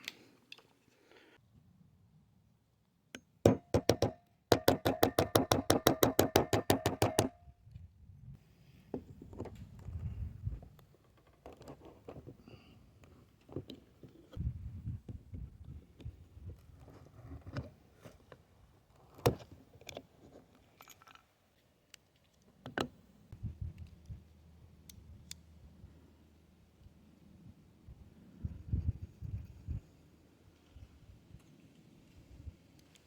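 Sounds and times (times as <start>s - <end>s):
small hammer striking metal: 3.5s - 7.4s
scraping and handling sounds: 8.8s - 14.4s.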